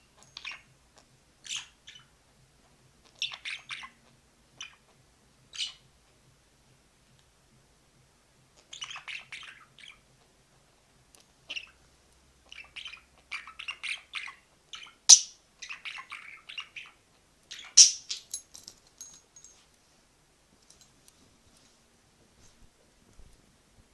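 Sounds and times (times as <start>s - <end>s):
budgerigar chirping: 12.5s - 18.2s.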